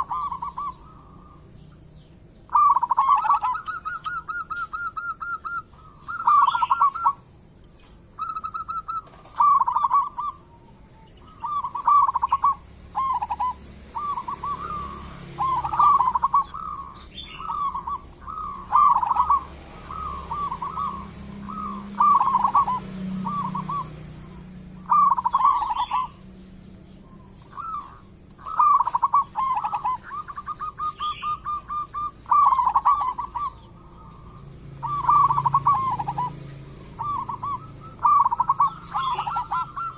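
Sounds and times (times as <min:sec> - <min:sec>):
dove cooing: 0:00.0 - 0:01.7, 0:02.4 - 0:07.3, 0:08.0 - 0:39.9
dove trills: 0:00.0 - 0:39.9.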